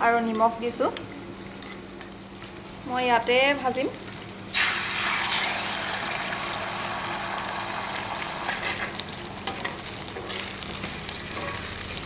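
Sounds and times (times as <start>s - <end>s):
eggs sizzling in hot oil: 4.0s - 12.0s.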